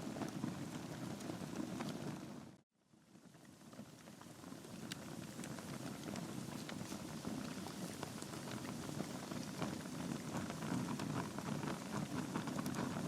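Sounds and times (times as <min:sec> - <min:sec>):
logs crackling and popping: 0:00.0 - 0:02.5, 0:03.2 - 0:13.0
fire rushing: 0:04.0 - 0:13.0.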